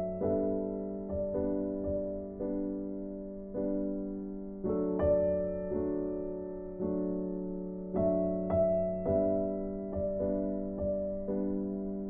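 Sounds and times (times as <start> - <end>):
soft piano melody: 0.0 - 12.0.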